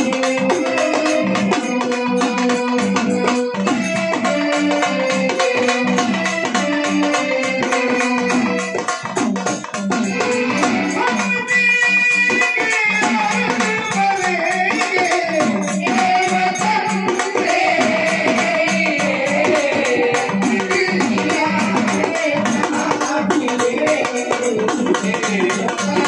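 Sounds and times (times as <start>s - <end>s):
person singing: 9.9s - 26.0s.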